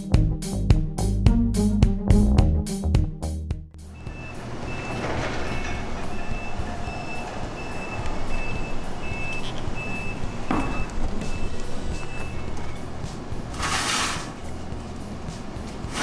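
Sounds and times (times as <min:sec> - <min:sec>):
high electronic beep: 0:03.9 - 0:12.5
dust collector humming: 0:03.9 - 0:16.0.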